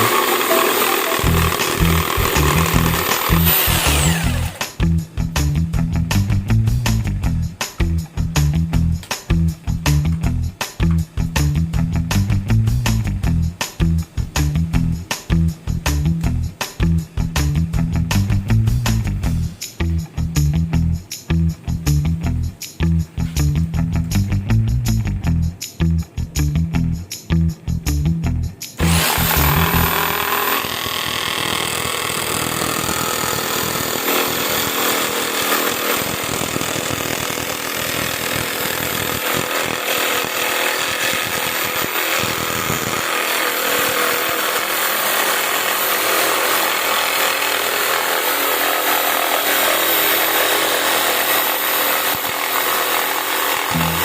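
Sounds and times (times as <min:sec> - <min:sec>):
electric jigsaw sawing: 0:00.0 - 0:04.8, 0:28.8 - 0:54.0.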